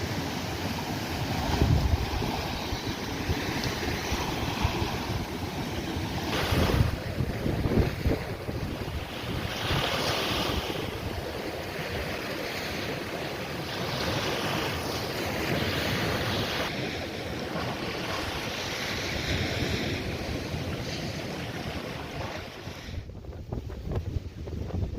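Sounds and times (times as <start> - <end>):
sea waves washing onto beach: 0.0 - 24.9
wind buffeting microphone: 1.2 - 12.1, 17.4 - 24.9.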